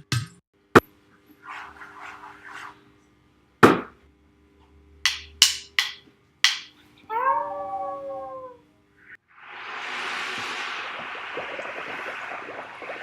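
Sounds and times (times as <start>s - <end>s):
rushing noise: 9.2s - 13.0s.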